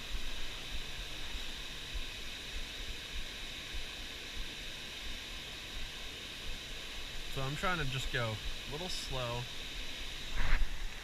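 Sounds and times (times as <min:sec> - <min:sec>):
creek water flowing: 0:00.0 - 0:11.0
low thumps on microphone: 0:10.3 - 0:10.8.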